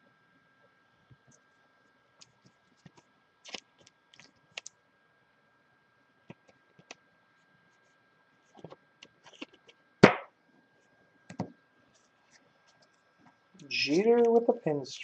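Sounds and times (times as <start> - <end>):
trading cards being handled: 2.2 - 4.7.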